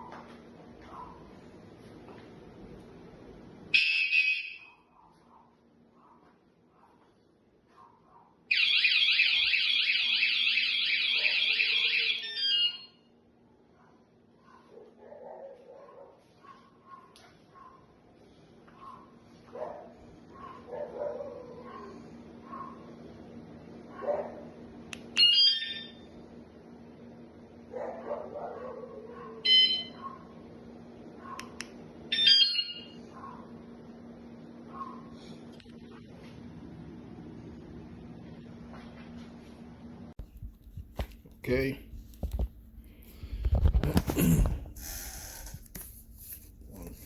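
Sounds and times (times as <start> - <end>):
bike alarm siren warbling: 3.8 - 4.8, 8.5 - 13.0, 29.4 - 30.0, 32.1 - 33.0.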